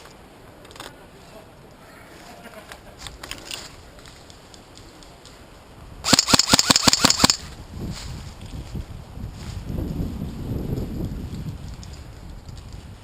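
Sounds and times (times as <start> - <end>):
airsoft gun firing burst: 6.0 - 7.5.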